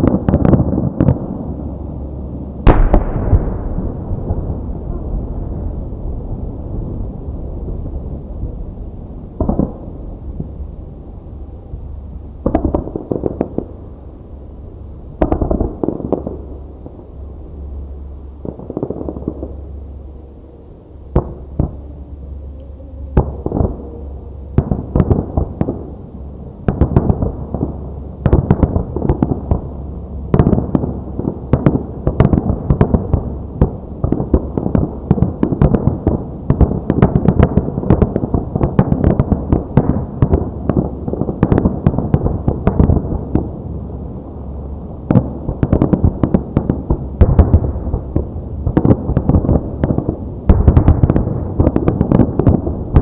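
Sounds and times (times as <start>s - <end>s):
fireworks bursting: 2.6s - 11.1s, 11.7s - 13.9s, 23.1s - 53.0s.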